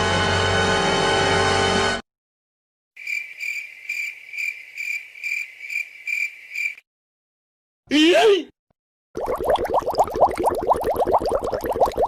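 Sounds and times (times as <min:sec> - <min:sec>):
cricket chirping: 0:03.0 - 0:06.8.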